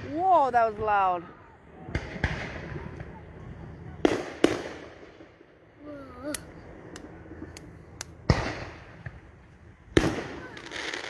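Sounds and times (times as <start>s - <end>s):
fireworks exploding: 1.8s - 5.6s, 6.3s - 11.0s.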